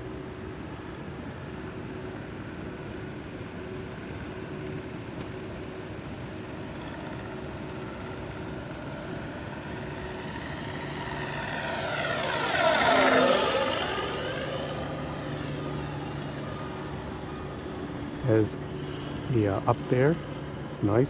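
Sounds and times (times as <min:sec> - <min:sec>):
model plane motor and propeller: 0:00.0 - 0:21.0
simulated engine sound from speaker: 0:10.2 - 0:21.0.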